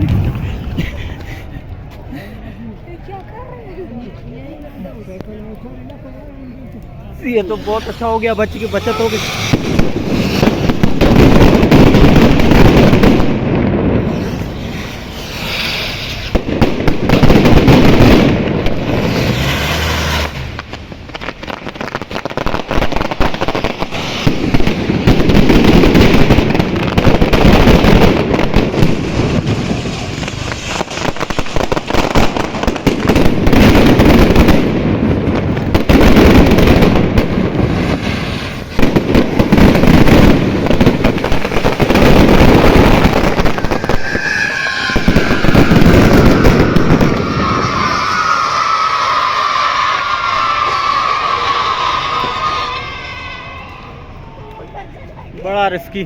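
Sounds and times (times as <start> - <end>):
fireworks cracking and banging: 0.0 - 56.0.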